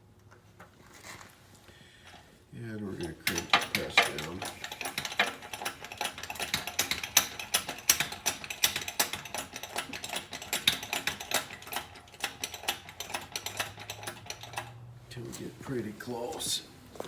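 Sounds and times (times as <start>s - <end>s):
metallic clicks and rattles: 2.0s - 14.8s.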